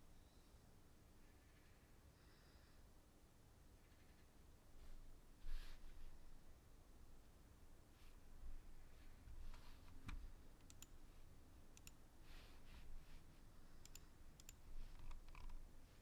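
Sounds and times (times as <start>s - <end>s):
faint room hum: 0.0s - 16.0s
faint computer mouse clicks: 9.5s - 11.0s, 11.7s - 12.0s, 13.8s - 15.6s.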